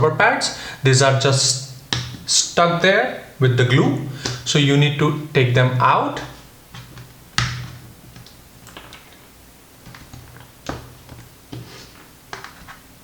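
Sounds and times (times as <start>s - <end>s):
rubber feet clicking and scratching: 6.6s - 9.2s, 9.8s - 13.0s.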